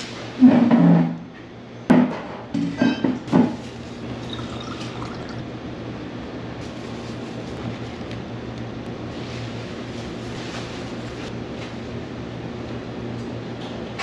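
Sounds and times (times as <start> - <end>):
glass and dishes clinking: 2.6 - 3.2, 4.3 - 5.4
liquid pouring: 4.1 - 5.4.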